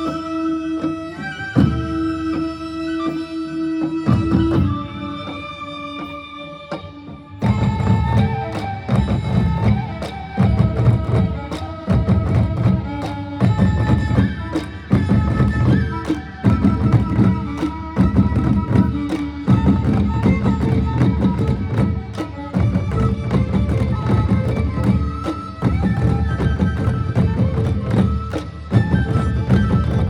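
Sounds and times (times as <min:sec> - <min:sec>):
barrel drums beaten fast: 0:07.5 - 0:30.0.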